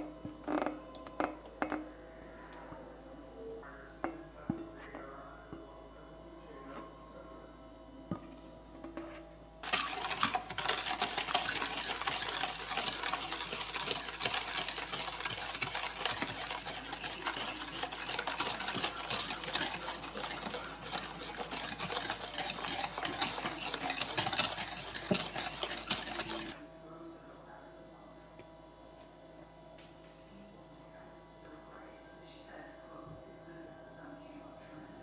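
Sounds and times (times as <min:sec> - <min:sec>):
utensil stirring in mixing bowl: 0:08.1 - 0:26.6.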